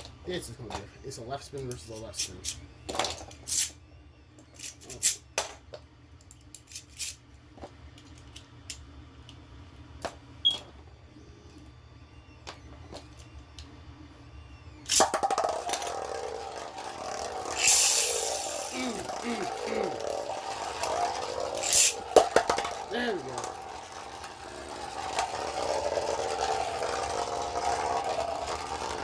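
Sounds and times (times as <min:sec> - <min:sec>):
spinning tops whirring: 0:14.8 - 0:29.0
ripcord launch ratcheting zip: 0:17.0 - 0:22.9.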